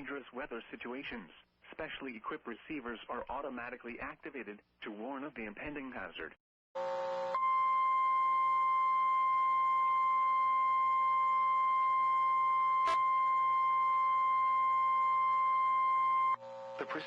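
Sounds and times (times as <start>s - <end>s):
steady warning alarm tone: 6.8s - 17.0s.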